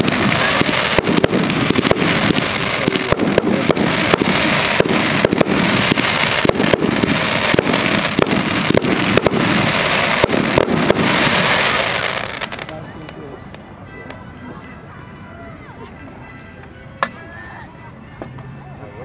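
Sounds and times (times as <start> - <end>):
fireworks crackling: 0.0 - 14.7
fireworks banging: 0.0 - 14.8.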